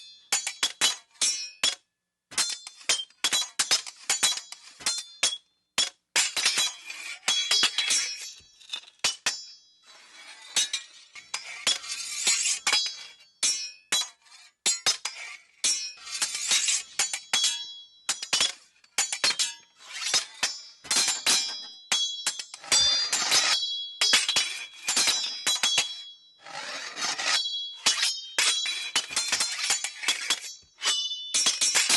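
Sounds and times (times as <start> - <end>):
steel blades clashing: 14.7 - 31.9.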